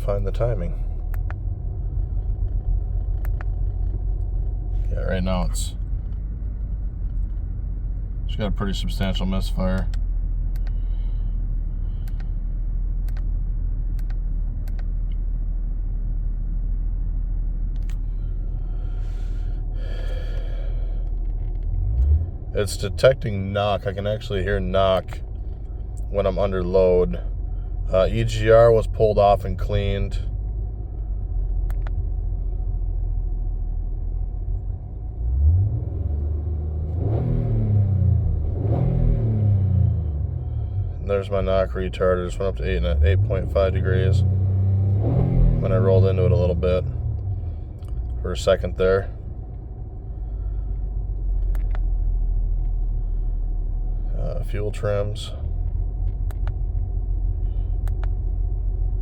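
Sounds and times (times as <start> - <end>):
car engine rumbling with misfire: 0.0 - 59.0
car engine revving from inside: 17.8 - 24.0, 34.7 - 41.5, 42.2 - 50.6.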